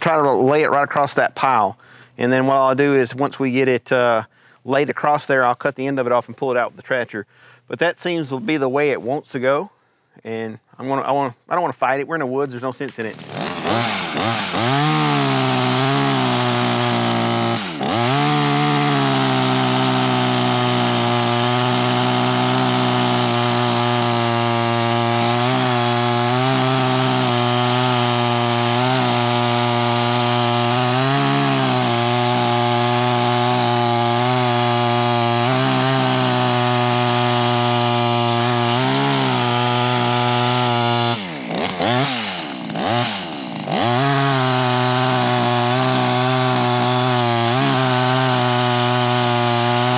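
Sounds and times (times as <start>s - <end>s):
chainsaw cutting into tree: 12.9s - 49.9s.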